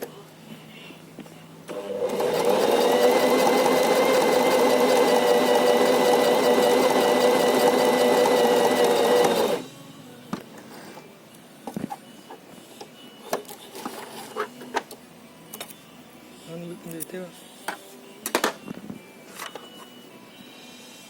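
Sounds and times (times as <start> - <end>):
sewing machine stitching: 1.7 - 9.7.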